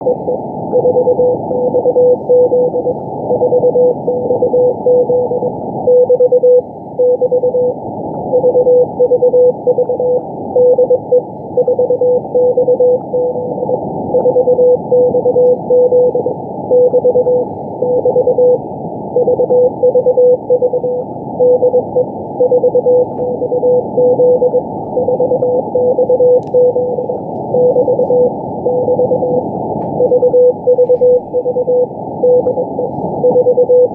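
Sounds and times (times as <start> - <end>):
morse code tone: 0.0 - 18.6, 19.2 - 33.9.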